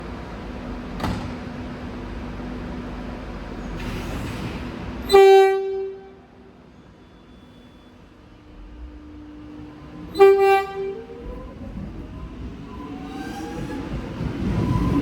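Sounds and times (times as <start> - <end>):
electric train rumbling: 0.0 - 15.0
train horn blast: 5.0 - 6.5, 8.5 - 11.7.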